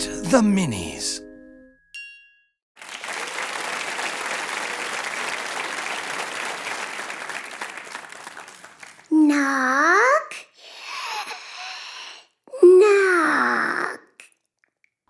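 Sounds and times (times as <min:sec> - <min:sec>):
audience applause: 0:02.8 - 0:09.1.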